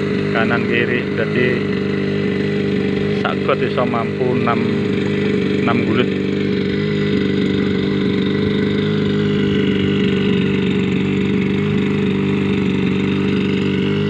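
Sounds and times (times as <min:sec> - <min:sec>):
two-stroke pump engine running: 0:00.0 - 0:14.0.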